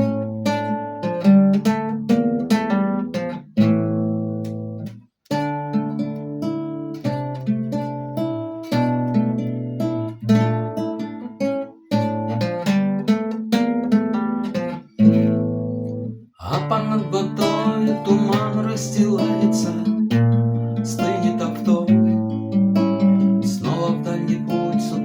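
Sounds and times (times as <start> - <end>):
acoustic guitar chords: 0.0 - 25.0.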